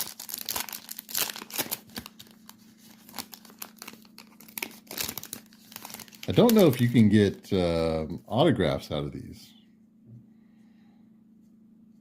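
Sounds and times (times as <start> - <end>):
wrapper tearing and crinkling: 0.0 - 7.2.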